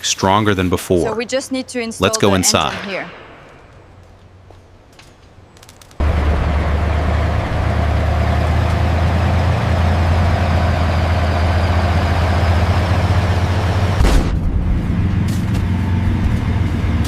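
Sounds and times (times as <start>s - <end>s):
heavy vehicle engine idling: 6.0s - 17.0s.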